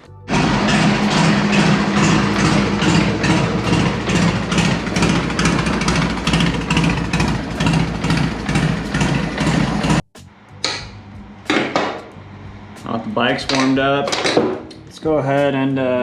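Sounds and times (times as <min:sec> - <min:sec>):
motorcycle engine idling: 0:00.3 - 0:10.0.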